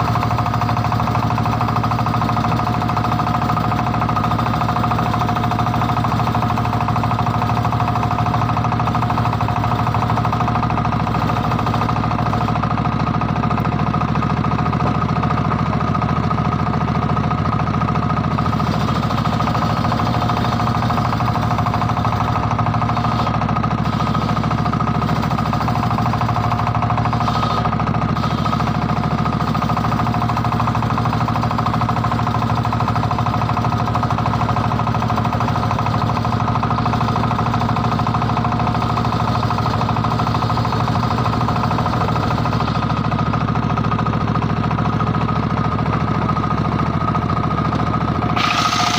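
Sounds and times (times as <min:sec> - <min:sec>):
circular saw whining: 0:18.4 - 0:30.4, 0:48.2 - 0:48.9.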